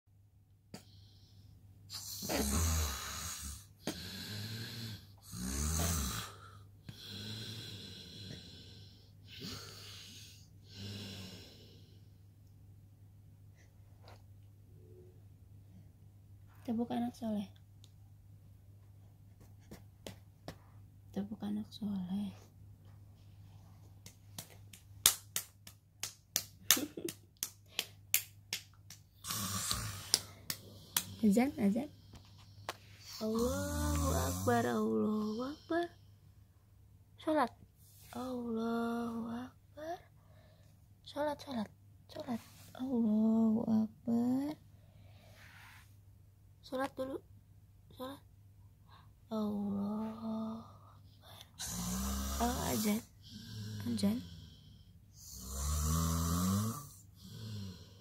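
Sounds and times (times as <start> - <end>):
man snoring: 2.0 - 11.8, 29.2 - 31.6, 33.2 - 35.6, 51.6 - 58.0
hands clapping in rhythm: 24.0 - 29.1, 29.7 - 31.2.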